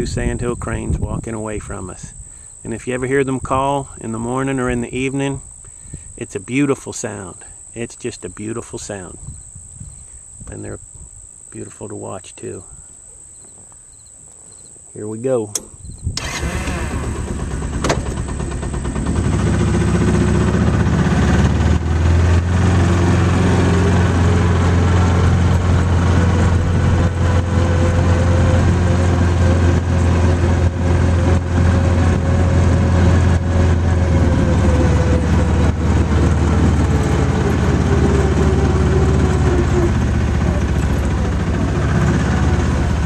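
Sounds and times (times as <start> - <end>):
utility vehicle engine running: 15.5 - 43.0.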